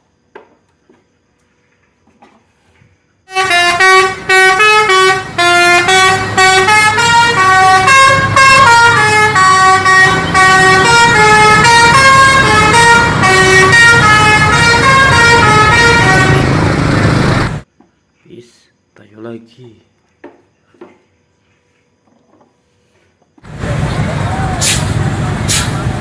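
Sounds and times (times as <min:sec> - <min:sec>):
multi-tone bus air horn melody: 0:03.3 - 0:16.8.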